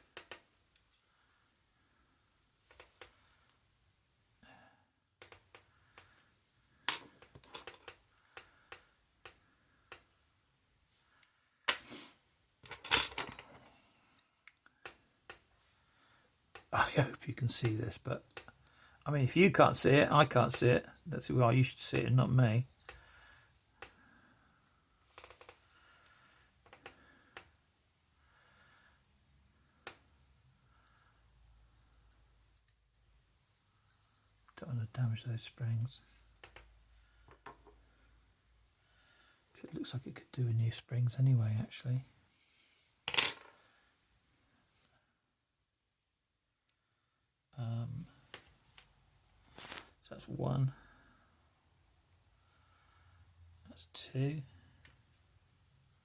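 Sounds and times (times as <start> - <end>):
small metal parts clicking: 31.7 - 34.6.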